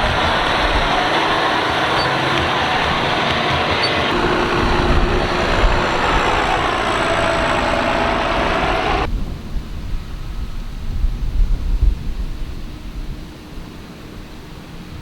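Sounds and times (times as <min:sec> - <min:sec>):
harvesting machinery running: 0:00.0 - 0:09.1
low rumble: 0:04.1 - 0:12.3.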